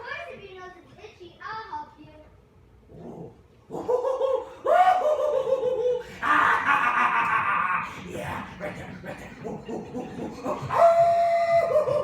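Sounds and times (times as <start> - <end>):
man's wavering vocal sounds: 3.7 - 12.0.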